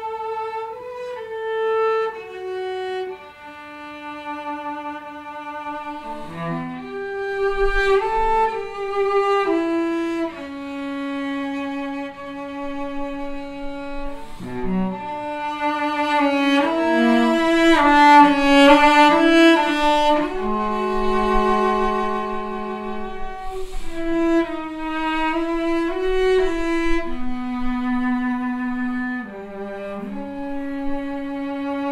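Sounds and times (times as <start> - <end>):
bowed string slow melody: 0.0 - 31.9.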